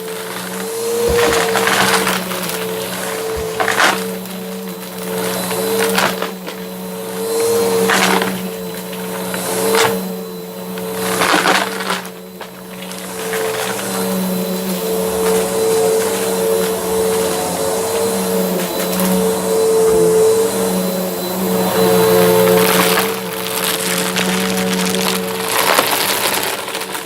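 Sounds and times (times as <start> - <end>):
brushroll crunching debris: 0.0 - 10.0, 10.8 - 20.4
vacuum cleaner motor hum: 0.0 - 27.0.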